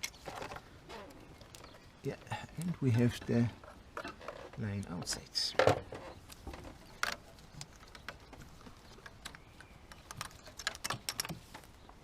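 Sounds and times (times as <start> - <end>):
hands clicking plastic clips: 9.0 - 11.4.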